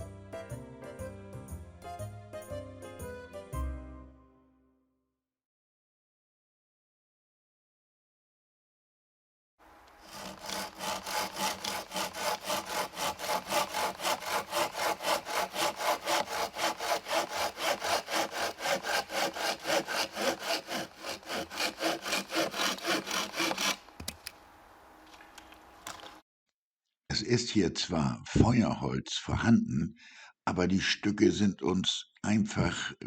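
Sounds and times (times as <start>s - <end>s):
hand saw cutting wood: 9.9s - 24.1s.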